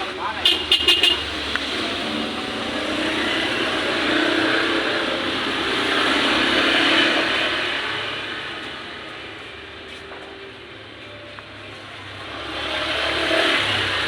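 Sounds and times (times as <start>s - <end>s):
vehicle passing by: 1.1s - 10.0s, 11.7s - 14.0s.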